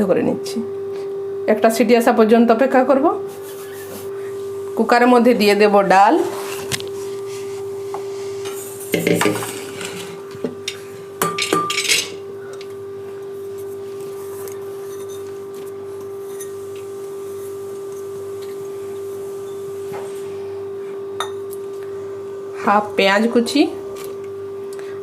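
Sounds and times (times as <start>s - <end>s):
metal kitchenware clattering: 11.2s - 12.2s.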